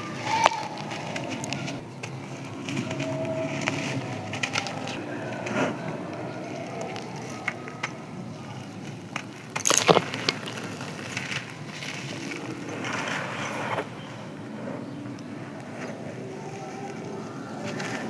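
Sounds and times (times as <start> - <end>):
dry cement crunching: 9.5 - 11.4.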